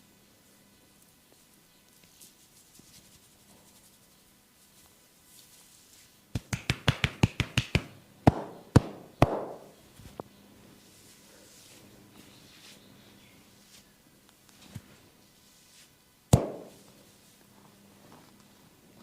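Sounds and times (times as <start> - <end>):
percussive massage strikes: 6.3 - 9.8, 16.3 - 16.8.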